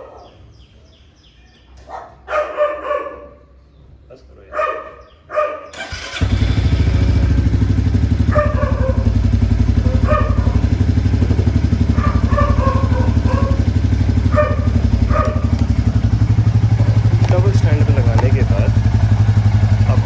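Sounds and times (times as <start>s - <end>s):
motorcycle engine idling: 5.8s - 20.0s.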